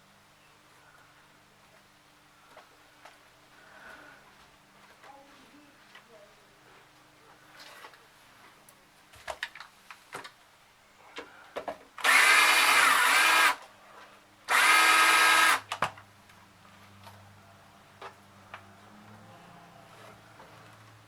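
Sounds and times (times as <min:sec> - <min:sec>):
cordless drill running: 0:12.0 - 0:13.6, 0:14.5 - 0:15.7.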